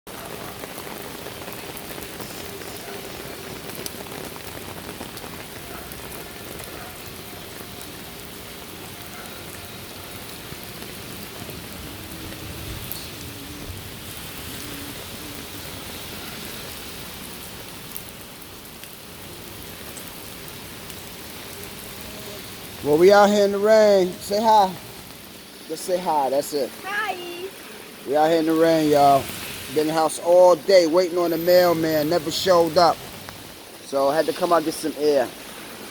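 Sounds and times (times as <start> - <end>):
steady rain falling: 0.1 - 35.9.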